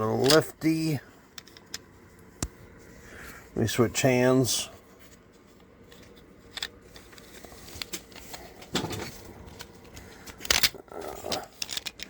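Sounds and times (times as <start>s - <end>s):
plastic parts clicking and rubbing: 0.0s - 0.6s, 1.3s - 2.5s, 5.0s - 12.0s.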